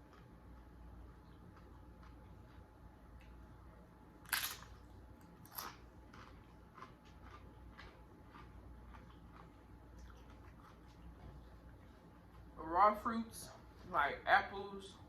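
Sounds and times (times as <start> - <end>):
chewing clicks: 0.0 - 2.6, 4.3 - 12.5
crunching bites into crisp food: 4.2 - 11.0.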